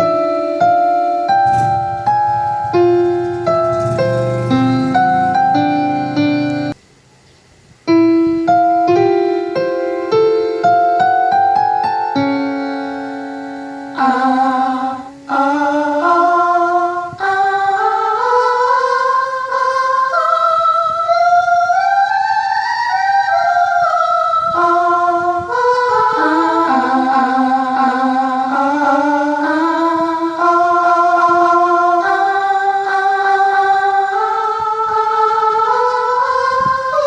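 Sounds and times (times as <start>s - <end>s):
held note: 0.0s - 6.8s
instrumental accompaniment: 0.0s - 6.8s, 7.8s - 37.0s
person singing slow melody: 0.0s - 6.8s, 7.9s - 37.0s.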